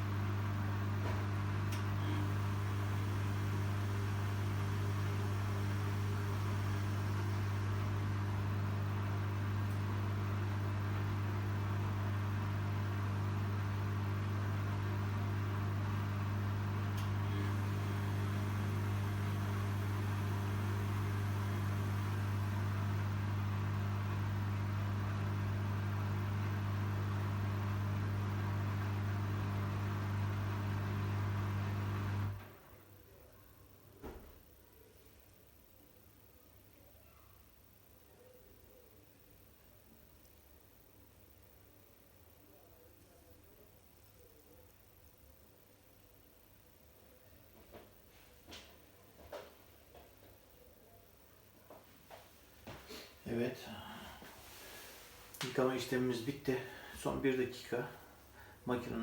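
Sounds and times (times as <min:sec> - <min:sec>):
washing machine humming: 0:00.0 - 0:32.8.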